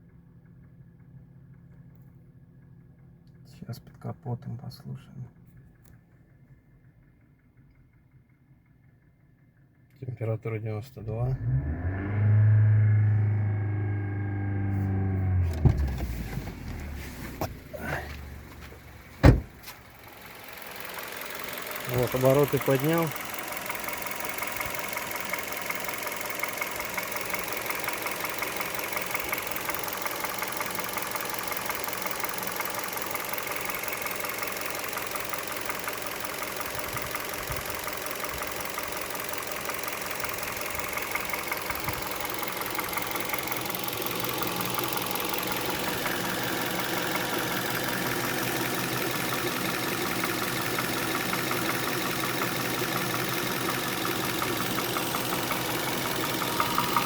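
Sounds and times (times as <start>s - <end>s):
engine revving: 11.0s - 18.4s, 20.0s - 57.0s
car engine idling with knock: 14.0s - 57.0s.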